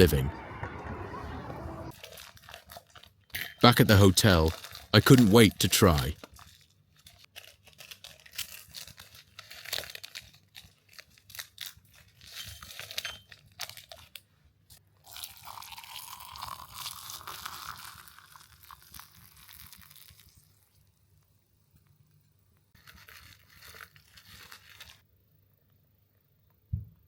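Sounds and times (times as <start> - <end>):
plastic wrapping crackling: 1.9 - 14.2, 17.0 - 20.6, 22.8 - 25.0.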